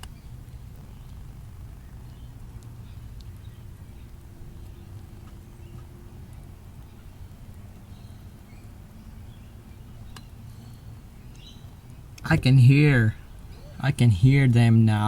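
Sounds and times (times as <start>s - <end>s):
low electrical buzz: 0.0s - 15.0s
faint clicks: 2.0s - 7.9s, 10.1s - 12.3s.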